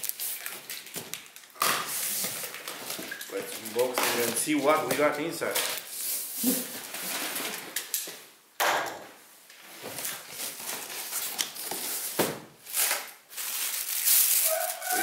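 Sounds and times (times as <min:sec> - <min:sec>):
cardboard rustling and scraping: 0:09.6 - 0:15.0.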